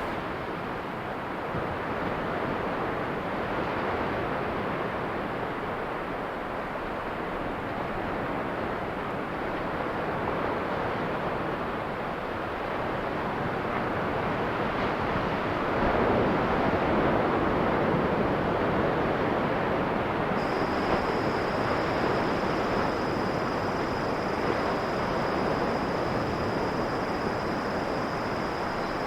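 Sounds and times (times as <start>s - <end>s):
ocean waves washing in: 20.4s - 29.0s.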